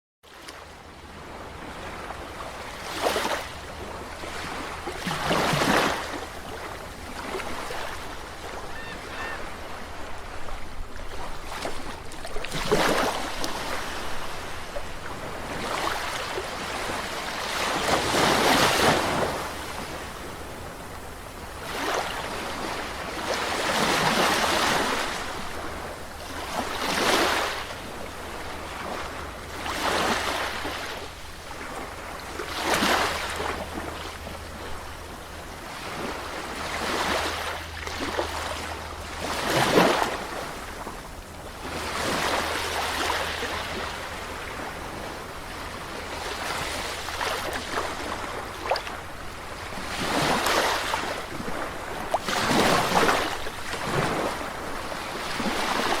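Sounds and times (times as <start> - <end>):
sea waves breaking: 0.3 - 56.0.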